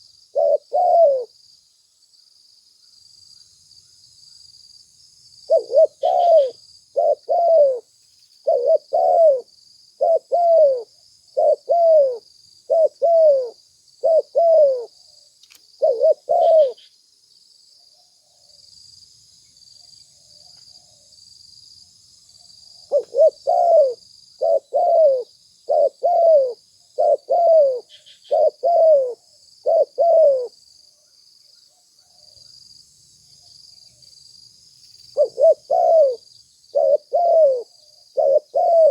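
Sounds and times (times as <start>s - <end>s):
dove cooing: 0.0s - 1.4s, 5.5s - 15.0s, 15.8s - 16.9s, 22.9s - 30.6s, 35.2s - 38.9s
cricket chirring: 0.0s - 38.9s.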